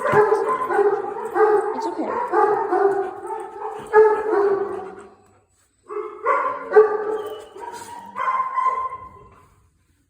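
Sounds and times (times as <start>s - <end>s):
dog whining and crying: 7.0s - 9.3s.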